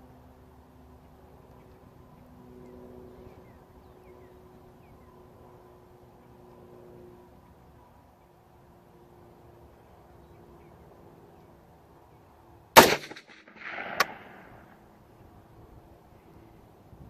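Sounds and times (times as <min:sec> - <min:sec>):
sharp click: 0:12.8 - 0:14.3
rifle shot with echo: 0:12.8 - 0:14.8.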